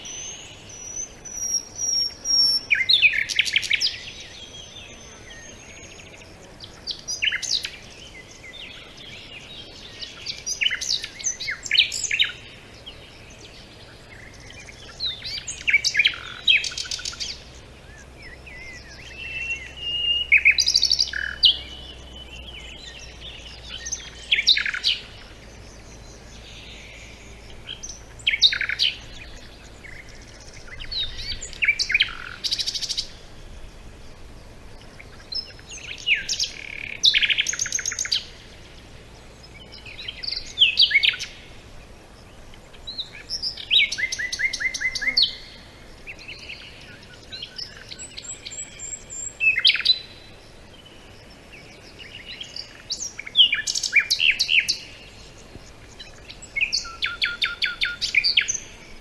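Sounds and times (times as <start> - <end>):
songbird trilling and whistling: 0.0 - 6.2, 6.8 - 33.3, 34.8 - 38.4, 39.4 - 41.4, 42.7 - 58.9.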